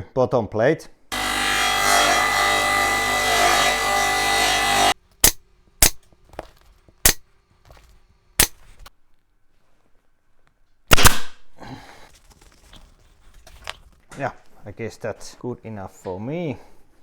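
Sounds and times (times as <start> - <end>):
power tool running: 1.1 - 6.0
staple gun snaps: 5.2 - 6.0.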